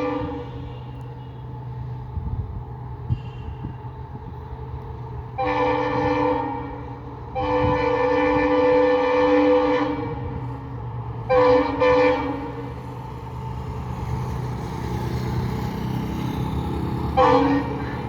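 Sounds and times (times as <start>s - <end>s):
locomotive air horn: 0.0s - 1.6s, 3.1s - 3.8s, 5.4s - 10.5s, 11.3s - 12.7s, 17.0s - 18.0s
diesel locomotive engine humming: 0.0s - 18.0s.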